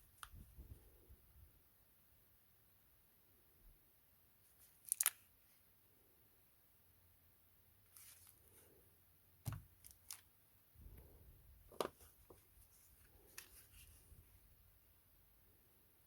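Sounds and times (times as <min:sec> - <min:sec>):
soft packaging rustling: 0:04.4 - 0:05.6, 0:07.8 - 0:08.8, 0:09.5 - 0:10.3, 0:10.9 - 0:14.5.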